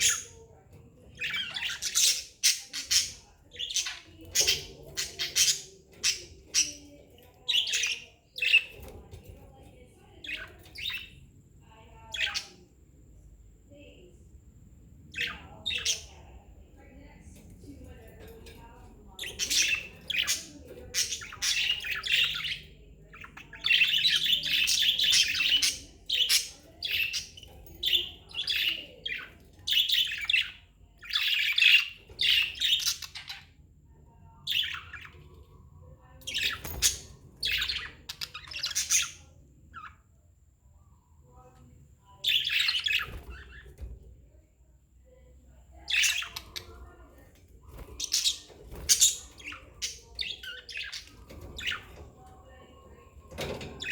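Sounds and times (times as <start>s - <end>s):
budgerigars chirping and chattering: 0.0s - 12.8s, 15.0s - 40.1s, 41.3s - 44.3s, 45.5s - 53.9s.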